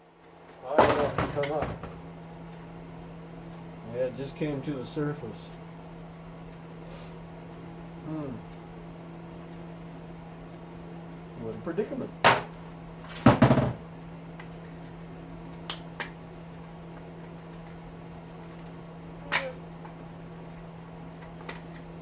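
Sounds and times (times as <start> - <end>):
steady low hum: 0.0 - 22.0
metal tools knocking on plastic: 13.3 - 13.8.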